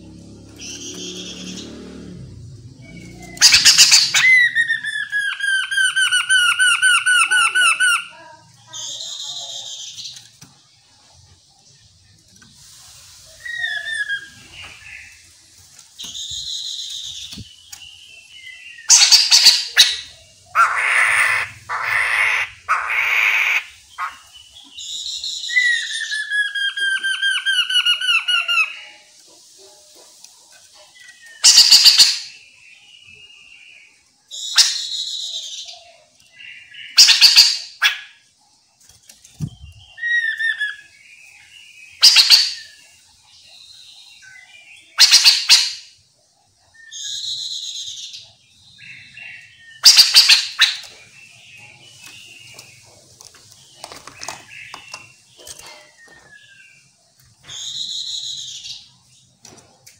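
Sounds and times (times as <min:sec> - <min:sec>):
birds whistling: 0:00.0 - 0:10.2, 0:11.9 - 0:29.8, 0:30.9 - 0:38.3, 0:39.3 - 0:59.2
rasping bird chatter: 0:00.0 - 0:32.5, 0:41.9 - 0:59.9
harsh bird calls: 0:00.0 - 0:59.9
falling whistled bird notes: 0:13.4 - 0:15.1.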